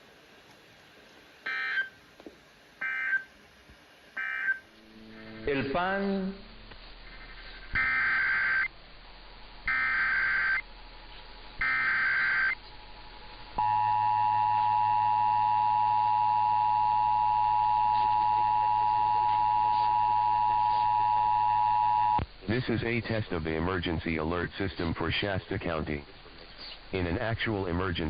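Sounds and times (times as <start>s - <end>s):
digital data tone bursts: 7.8s - 8.7s, 9.7s - 10.6s, 11.6s - 12.6s
steady two-tone attention signal: 13.6s - 22.2s.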